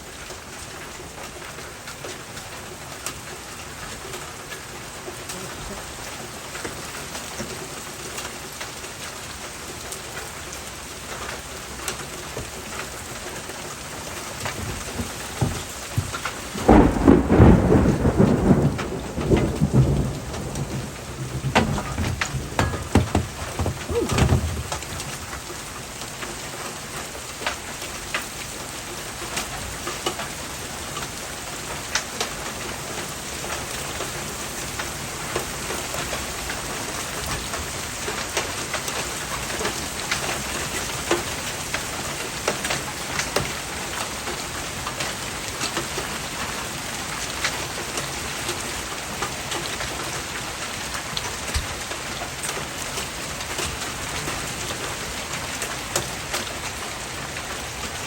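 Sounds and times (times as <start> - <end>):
steady downpour: 0.0 - 58.0
hailstones striking surfaces: 13.8 - 25.6.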